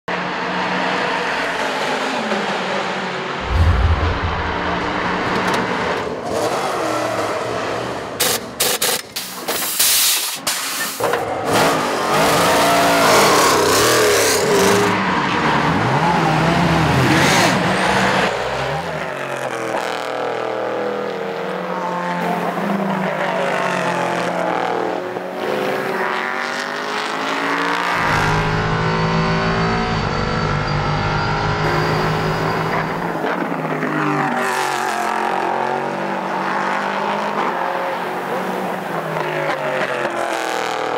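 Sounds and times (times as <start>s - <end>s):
race cars passing at speed: 11.3s - 40.9s.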